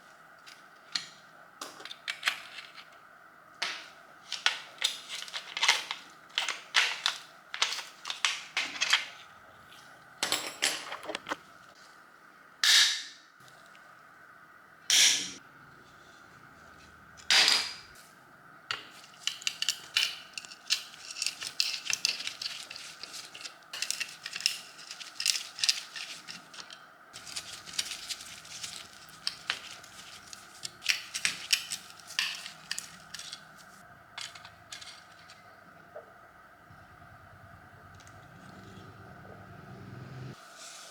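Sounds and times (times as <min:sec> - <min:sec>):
metal clinking and scraping: 0:19.0 - 0:35.4.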